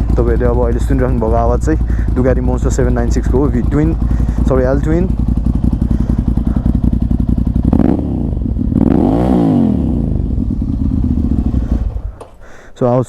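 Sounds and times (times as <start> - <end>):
motorcycle engine idling and revving: 0.0 - 13.0.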